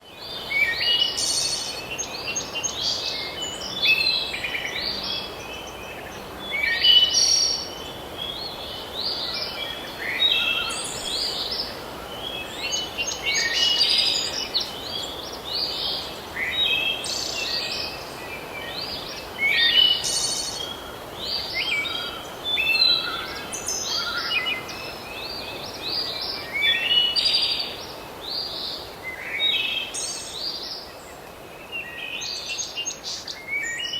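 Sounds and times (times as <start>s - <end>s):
faint background hiss: 0.0s - 33.9s
songbirds chirping and trilling: 0.0s - 33.9s.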